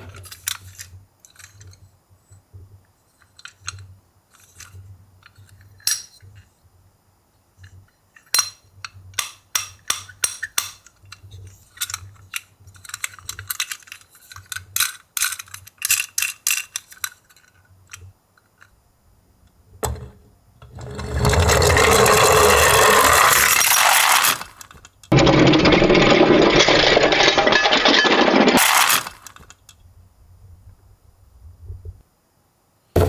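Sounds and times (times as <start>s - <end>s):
toy cars clinking together: 20.7s - 29.6s.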